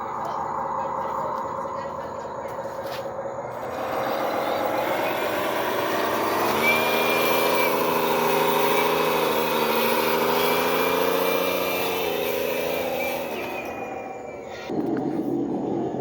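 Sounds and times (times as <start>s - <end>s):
small electric motors whining: 3.5s - 14.9s.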